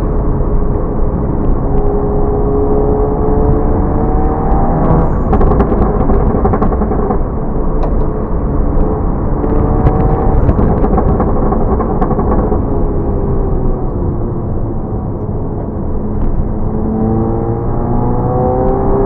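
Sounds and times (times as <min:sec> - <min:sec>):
car engine revving: 0:00.0 - 0:19.0
exhaust pops and crackles: 0:03.5 - 0:14.0.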